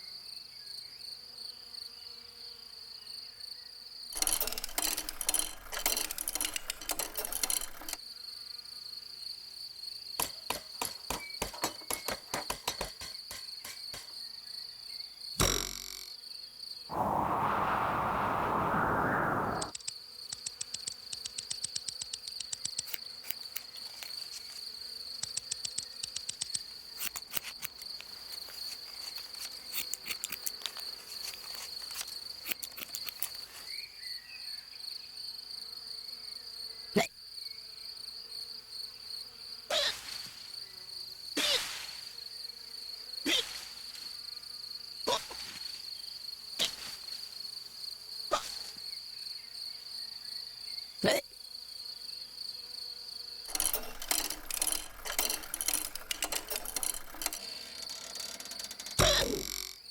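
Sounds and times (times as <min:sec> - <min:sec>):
fast clicking: 0:04.2 - 0:08.0, 0:19.6 - 0:23.7, 0:25.2 - 0:27.8, 0:53.5 - 0:59.7
high cricket-like trill: 0:04.2 - 0:08.0, 0:53.5 - 0:59.9
short sharp hiccups: 0:51.0 - 0:51.2.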